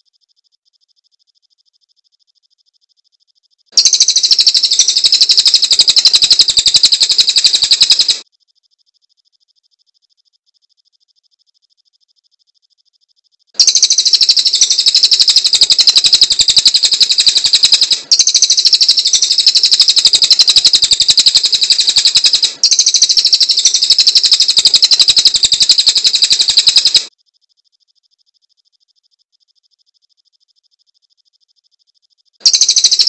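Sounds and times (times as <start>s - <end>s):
songbird rapid high chirps: 0.2s - 8.2s, 9.2s - 33.0s.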